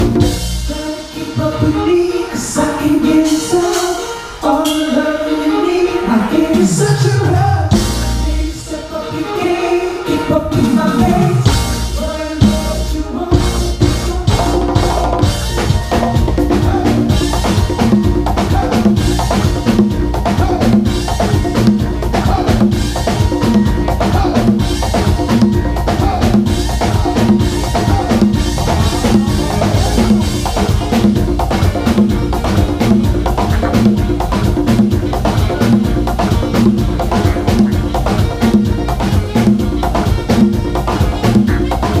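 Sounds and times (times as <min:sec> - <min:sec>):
drum beat: 0:00.0 - 0:00.7, 0:07.4 - 0:08.2, 0:10.6 - 0:42.0
bass line: 0:00.0 - 0:05.2, 0:06.0 - 0:09.0, 0:10.2 - 0:42.0
congas playing: 0:00.0 - 0:42.0.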